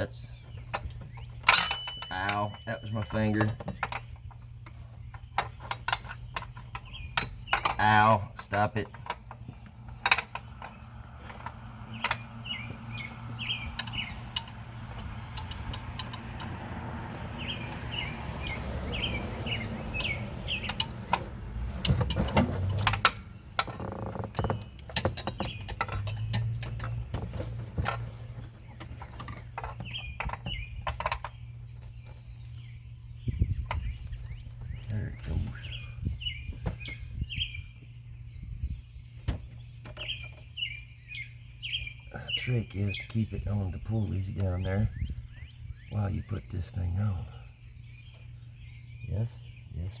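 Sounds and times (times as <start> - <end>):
birds chirping: 0.0 - 50.0
tools clicking and clinking: 13.7 - 16.6.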